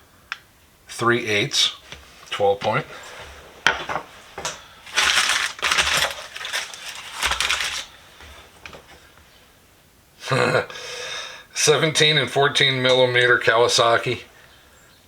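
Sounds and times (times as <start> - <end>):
packaging crackling and tearing: 4.4 - 8.4.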